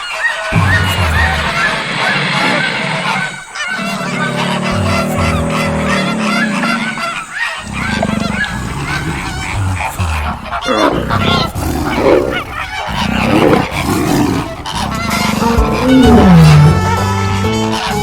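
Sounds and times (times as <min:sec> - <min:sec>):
lower animal calls: 0:00.0 - 0:18.0
short rising animal calls: 0:00.5 - 0:17.1.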